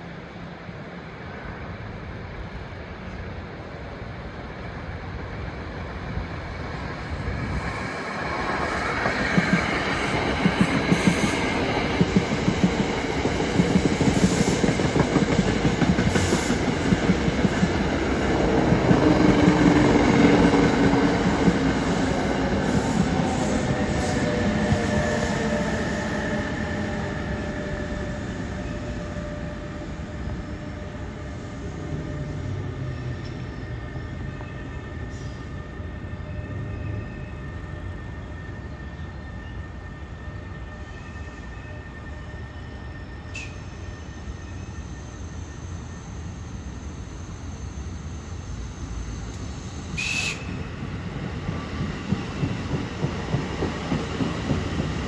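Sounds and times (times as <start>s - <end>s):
passenger train passing: 0.0s - 55.0s
faint wheel squeal: 40.7s - 44.8s.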